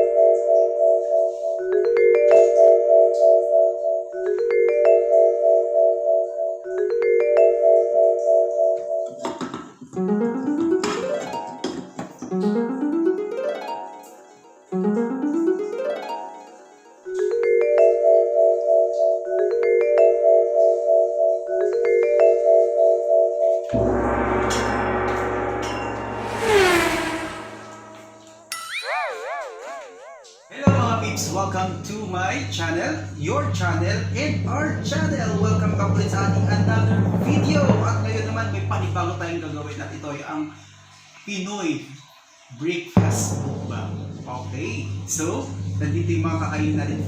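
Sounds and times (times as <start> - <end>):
held low chords: 23.7 - 28.4
bell-like mallet runs: 28.5 - 30.4.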